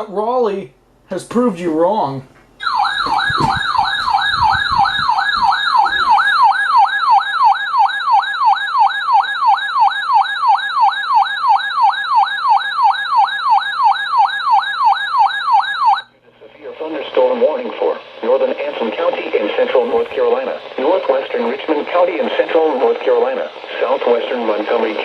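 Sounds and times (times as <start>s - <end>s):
electronic siren yelp: 2.6s - 16.1s.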